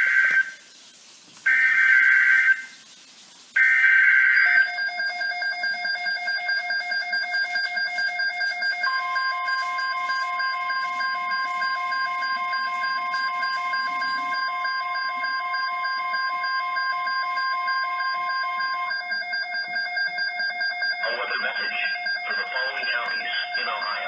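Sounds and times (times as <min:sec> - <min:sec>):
steady warning alarm tone: 0:00.0 - 0:00.6, 0:01.5 - 0:02.8, 0:03.6 - 0:24.0
buzzy digital data bursts: 0:00.0 - 0:15.3, 0:17.2 - 0:24.0.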